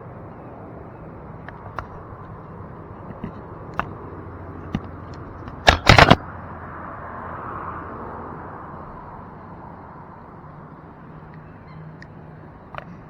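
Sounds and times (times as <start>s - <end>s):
sharp clicks: 3.1s - 4.0s, 4.7s - 6.2s
loud knocks: 5.5s - 6.2s.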